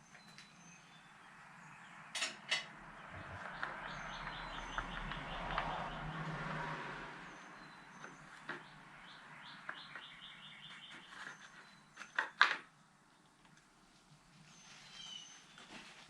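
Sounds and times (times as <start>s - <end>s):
bird chirping: 0.0s - 2.1s, 2.8s - 6.6s, 7.2s - 12.4s, 14.4s - 15.8s.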